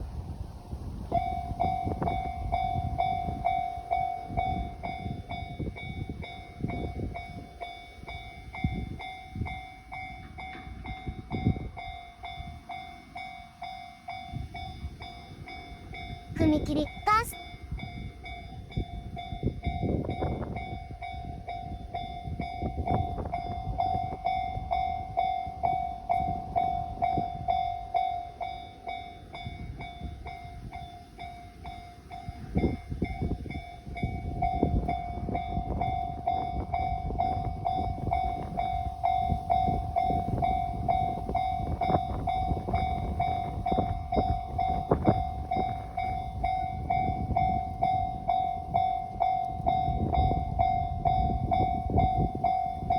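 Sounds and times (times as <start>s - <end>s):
electric train passing: 0.0s - 16.3s, 16.9s - 52.9s
level crossing warning bell: 1.0s - 52.9s.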